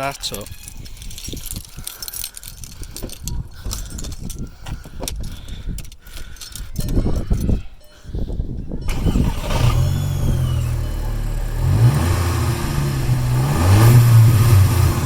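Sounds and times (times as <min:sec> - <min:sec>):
car keys jangling: 0:00.4 - 0:04.4.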